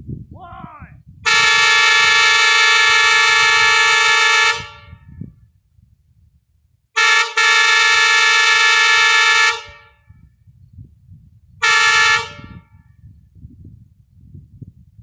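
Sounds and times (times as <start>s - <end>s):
air train horn blasts: 1.2s - 5.2s, 7.0s - 10.1s, 11.6s - 12.7s.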